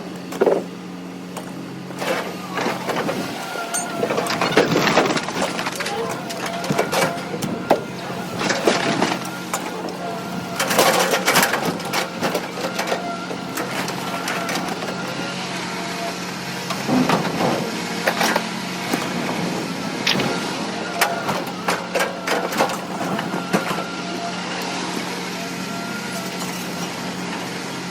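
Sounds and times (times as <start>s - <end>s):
engine hum: 0.0s - 27.9s
scrap metal clanking: 0.3s - 0.7s, 1.4s - 15.0s.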